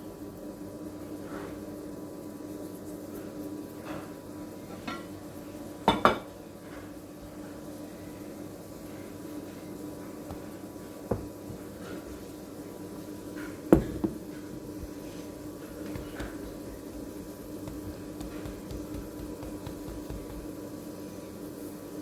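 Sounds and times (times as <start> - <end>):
steady low hum: 9.7 - 21.6
household items knocking: 11.1 - 11.7, 13.7 - 20.6.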